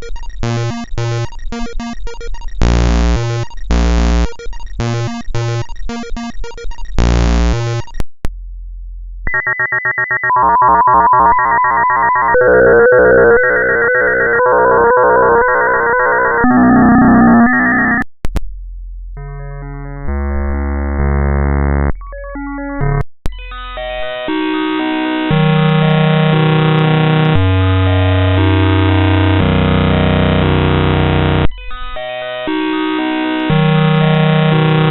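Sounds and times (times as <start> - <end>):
buzzy electronic pattern: 0.0 - 8.0, 9.3 - 18.0, 24.8 - 31.5
pulsing electronic melody loop: 0.0 - 8.0, 9.3 - 18.0.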